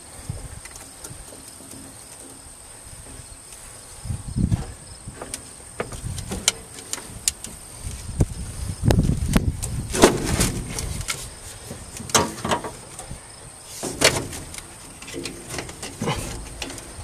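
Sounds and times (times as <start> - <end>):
metallic knocks and scrapes: 9.6 - 13.1.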